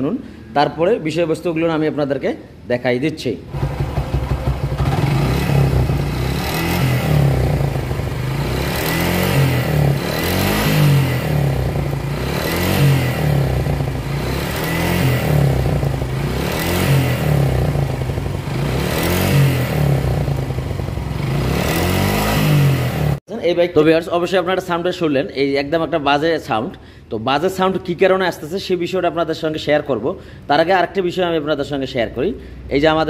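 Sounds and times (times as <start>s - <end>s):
engine clattering: 3.5s - 22.2s
motorcycle engine revving: 3.5s - 23.2s.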